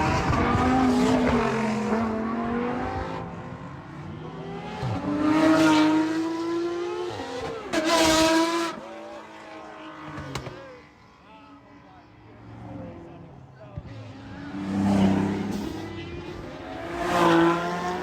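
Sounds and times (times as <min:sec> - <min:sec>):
car engines revving past: 0:12.4 - 0:18.0.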